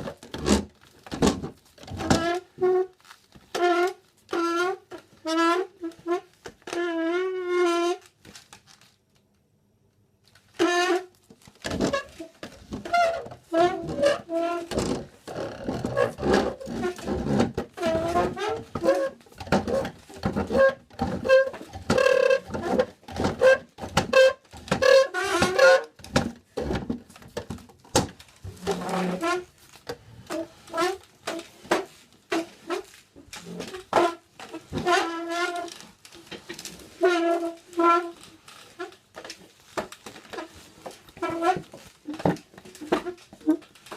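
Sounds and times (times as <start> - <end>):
chair legs scraping on floor: 10.8 - 43.9.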